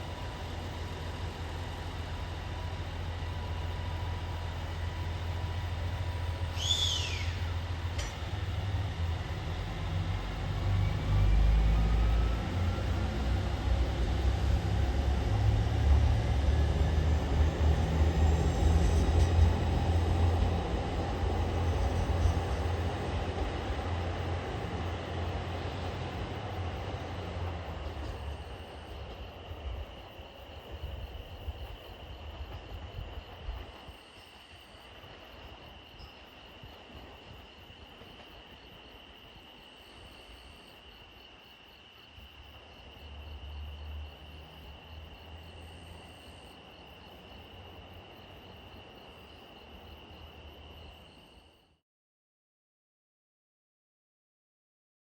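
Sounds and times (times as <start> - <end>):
diesel train engines throbbing: 0.0 - 35.7
insect chirr: 0.0 - 51.8.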